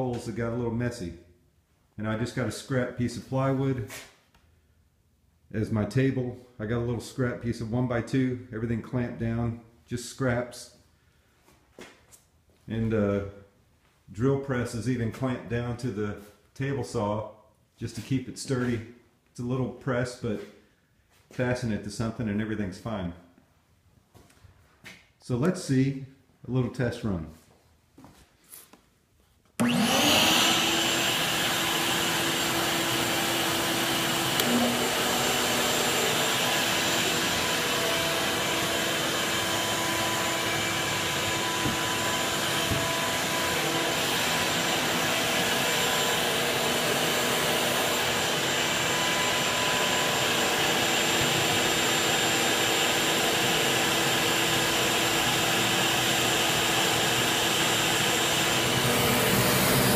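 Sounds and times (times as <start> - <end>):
shop vac running: 29.6 - 59.9.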